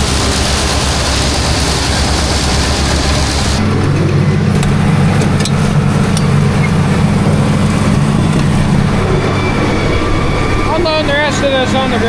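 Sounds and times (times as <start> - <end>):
tractor diesel engine running: 0.0 - 12.0.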